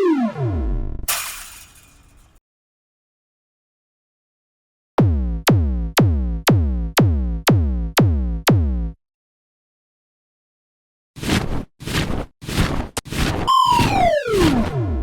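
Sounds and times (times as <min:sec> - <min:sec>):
electronic kick drum hits: 0:05.0 - 0:09.0.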